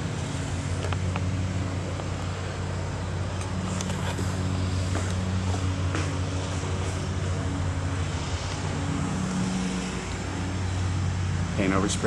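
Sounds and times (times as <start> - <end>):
engine idling: 0.0 - 12.0.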